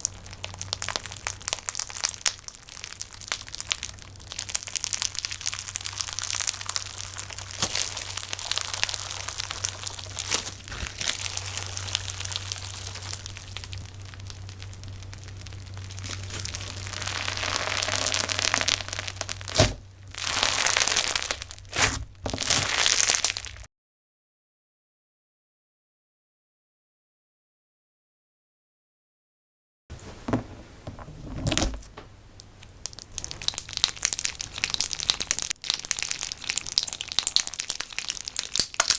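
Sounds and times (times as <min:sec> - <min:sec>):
low steady hum: 0:00.0 - 0:23.6
slime crackling and popping: 0:00.0 - 0:23.7, 0:32.4 - 0:38.9
slime squeezed by hand: 0:00.7 - 0:23.7.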